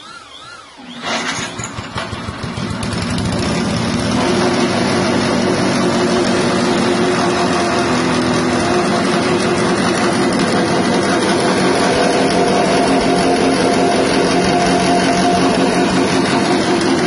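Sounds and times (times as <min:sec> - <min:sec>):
petrol engine running: 0:00.0 - 0:17.0.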